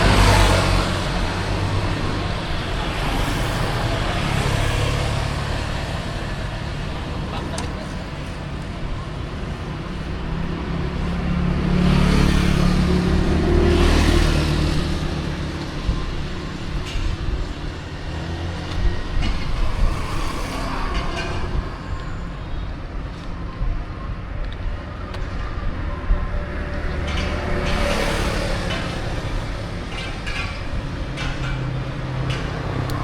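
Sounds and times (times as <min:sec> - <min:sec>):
engine and road noise: 0:00.0 - 0:33.0
vehicle passing by: 0:10.5 - 0:15.9.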